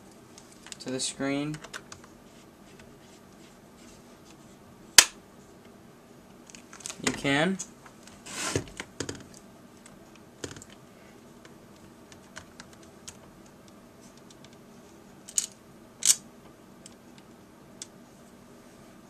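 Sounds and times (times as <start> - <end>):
small parts and tools clicking: 15.3 - 16.2.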